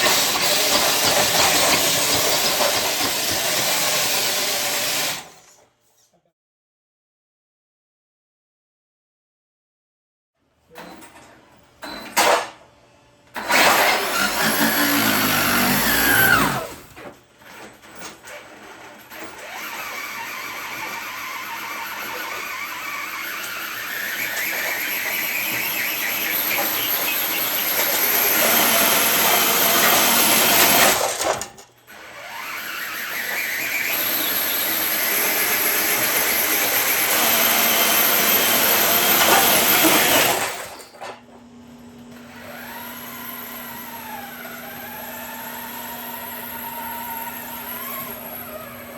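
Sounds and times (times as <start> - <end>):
toy truck motor whining: 13.4 - 17.1, 18.0 - 40.9, 42.3 - 48.9.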